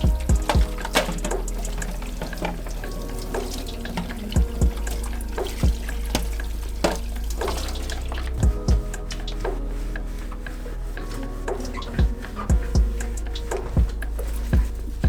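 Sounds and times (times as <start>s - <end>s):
background music with low beat: 0.0s - 15.0s
water running from a tap: 0.0s - 15.0s.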